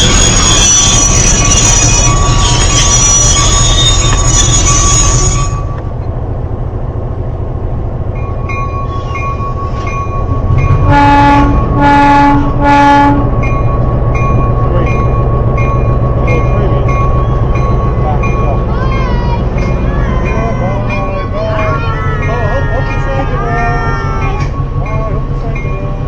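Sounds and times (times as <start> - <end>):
locomotive bell ringing: 0.0 - 6.4, 7.9 - 26.0
train locomotive rumbling: 0.0 - 26.0
train horn blasts: 10.7 - 13.4.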